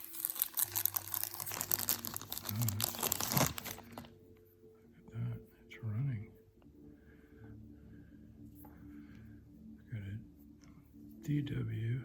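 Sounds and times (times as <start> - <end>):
packaging crinkling: 0.0 - 4.2.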